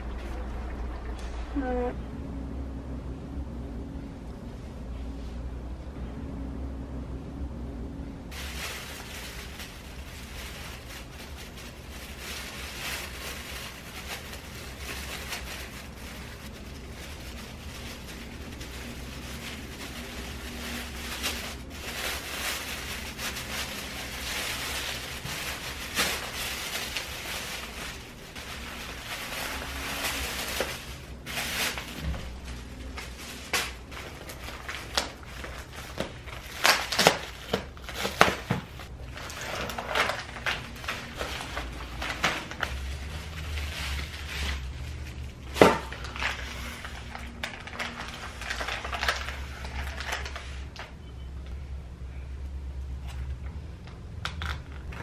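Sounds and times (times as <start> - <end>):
steady low hum: 0.0 - 36.8.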